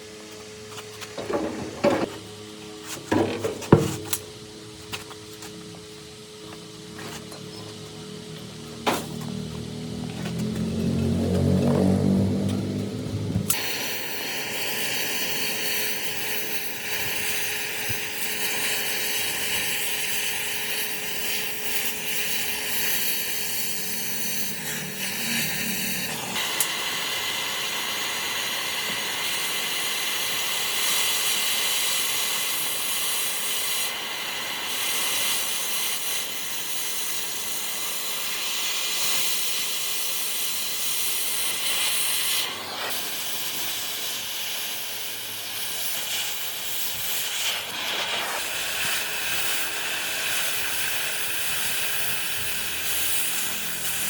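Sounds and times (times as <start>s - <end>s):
loud steady hiss: 13.5s - 54.0s.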